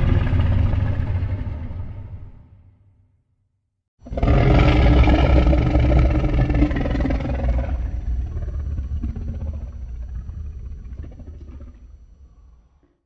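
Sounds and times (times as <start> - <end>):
monster roar over deep rumble: 0.0 - 2.6, 4.1 - 11.8.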